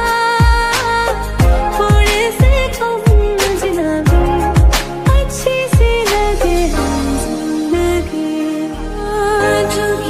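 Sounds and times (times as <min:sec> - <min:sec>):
deep kick drum: 0:01.4 - 0:03.4, 0:04.1 - 0:06.0.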